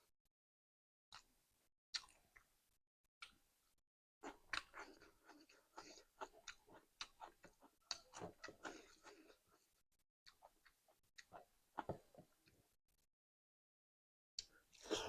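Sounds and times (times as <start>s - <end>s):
person chewing food: 2.0s - 2.5s, 4.2s - 12.6s.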